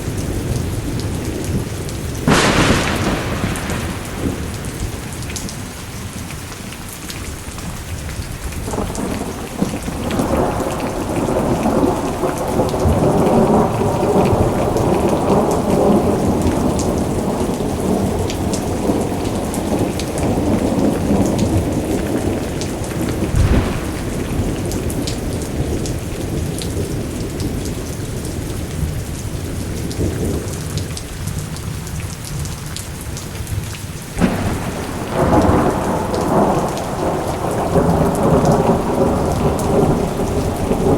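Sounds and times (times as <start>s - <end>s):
steady rain: 0.0s - 40.9s
rolling thunder: 0.1s - 5.8s, 8.4s - 29.0s, 34.2s - 40.9s
thunder clap: 2.2s - 5.7s, 19.8s - 27.6s, 34.2s - 40.9s.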